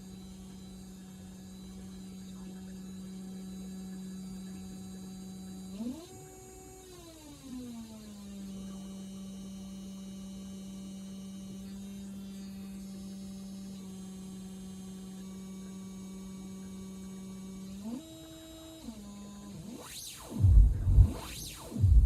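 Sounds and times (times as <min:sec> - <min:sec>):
low buzzy synthesizer note: 0:19.5 - 0:22.0.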